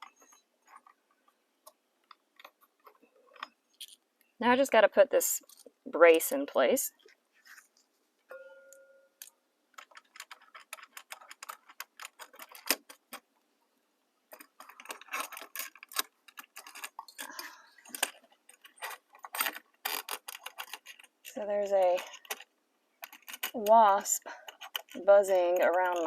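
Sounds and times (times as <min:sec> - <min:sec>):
small metal clicks and taps: 0:24.4 - 0:26.0.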